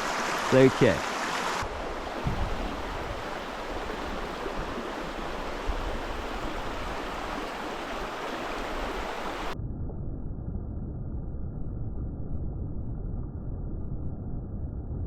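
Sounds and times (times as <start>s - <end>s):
creek water rushing: 0.0s - 9.6s
dull low rumble: 9.6s - 15.0s.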